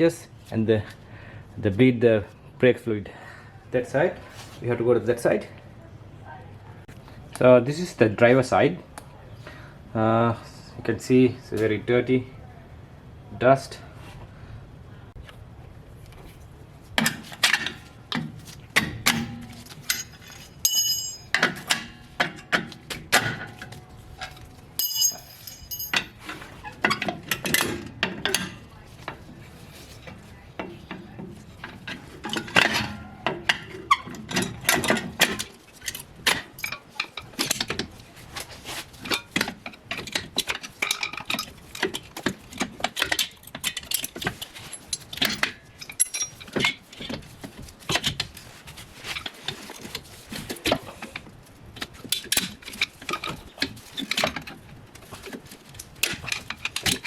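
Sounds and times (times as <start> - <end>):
tools and metal parts clattering: 17.0 - 57.0
ringing metallic clinks: 19.9 - 21.4, 24.8 - 26.2.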